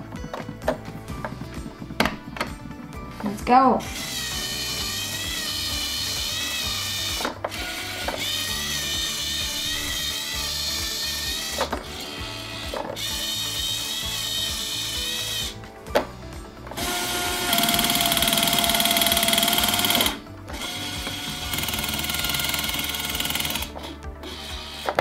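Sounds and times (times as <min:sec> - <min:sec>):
tinny toy music: 0:00.1 - 0:16.2, 0:16.8 - 0:25.0
small electric motor whirring: 0:03.8 - 0:15.6, 0:16.8 - 0:25.0.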